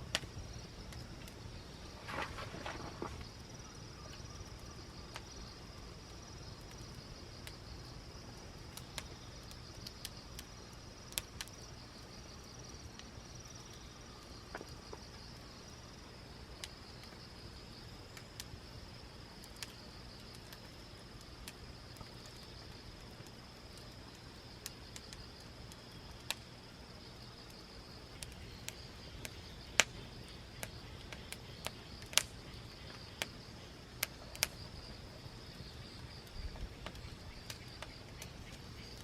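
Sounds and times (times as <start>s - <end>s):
campfire crackling and popping: 0.0s - 39.0s
insects trilling: 0.0s - 39.0s
brief rustle: 2.0s - 3.3s.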